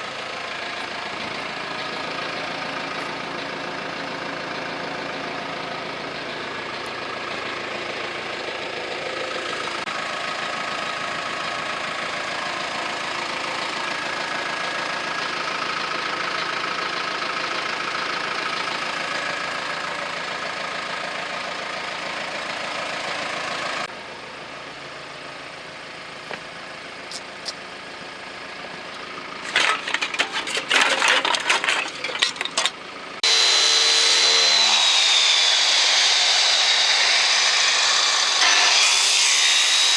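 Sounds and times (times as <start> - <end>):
power tool whining: 29.4 - 39.9.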